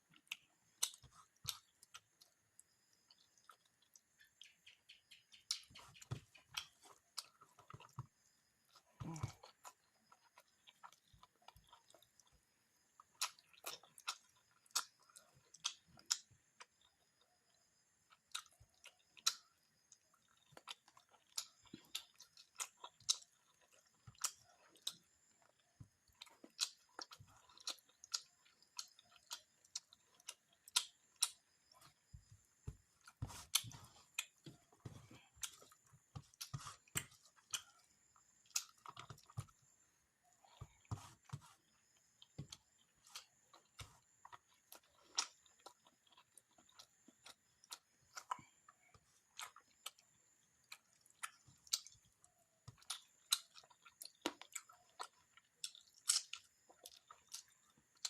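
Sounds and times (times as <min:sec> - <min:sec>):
person chewing with wet smacks: 0:00.0 - 0:58.0.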